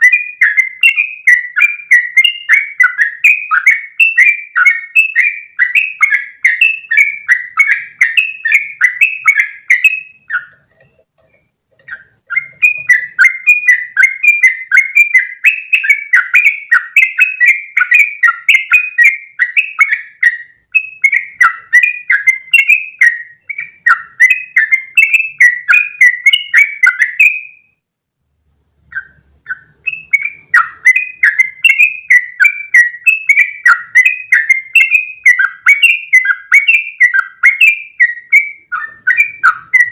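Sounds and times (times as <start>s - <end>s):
bird singing chattering notes: 0.0s - 10.7s, 11.3s - 27.6s, 28.9s - 39.9s.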